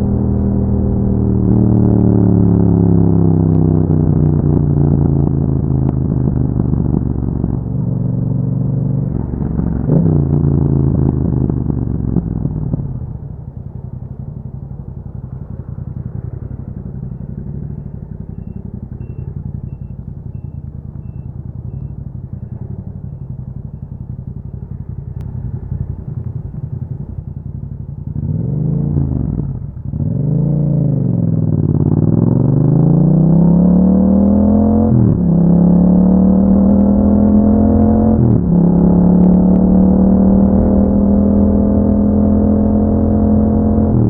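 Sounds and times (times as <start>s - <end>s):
motorcycle accelerating: 0.0s - 44.0s
motorcycle engine idling and revving: 0.0s - 44.0s.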